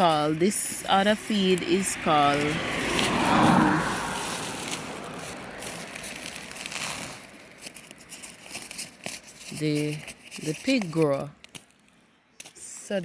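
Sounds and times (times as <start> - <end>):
feed sack crinkling: 0.0 - 13.0.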